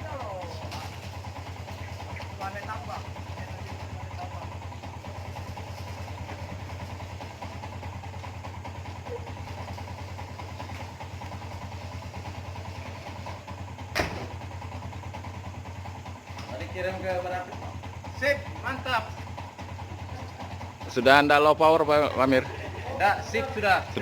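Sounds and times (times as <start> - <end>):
diesel engine running: 0.0 - 24.0
sharp knock: 13.9 - 14.3.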